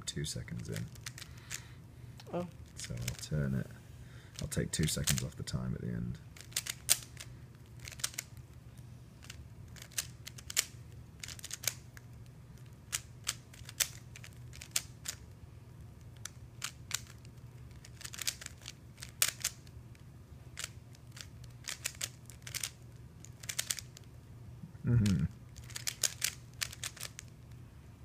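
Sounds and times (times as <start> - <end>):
low steady hum: 0.0 - 28.0
speed cube layers clicking: 4.4 - 5.3, 6.4 - 8.3, 9.2 - 11.8, 12.9 - 15.2, 16.2 - 19.6, 20.6 - 24.0, 25.0 - 27.3.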